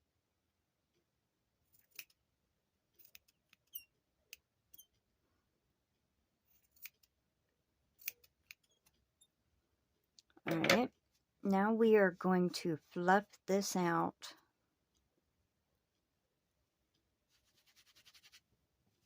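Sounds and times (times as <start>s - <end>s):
scissors snipping yarn: 1.7s - 2.2s, 2.9s - 4.9s, 6.5s - 7.2s, 8.0s - 9.0s.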